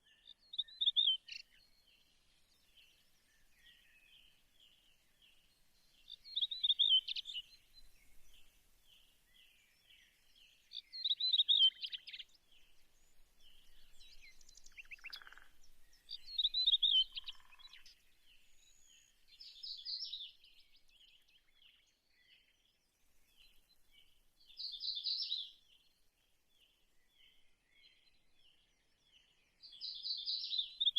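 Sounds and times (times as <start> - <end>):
warbling bird song: 0.0 - 25.9, 26.6 - 30.9
birds chirping: 0.5 - 21.8, 23.2 - 25.8.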